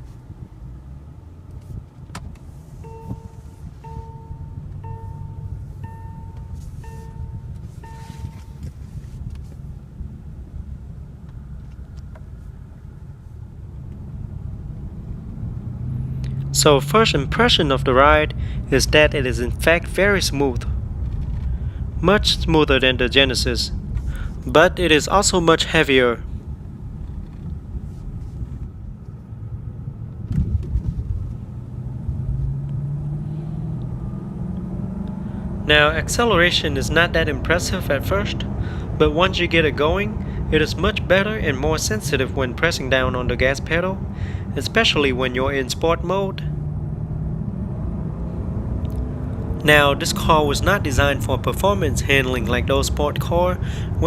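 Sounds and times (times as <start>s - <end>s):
engine and road noise in car: 0.0s - 54.0s
car warning chime beeping: 2.8s - 8.8s.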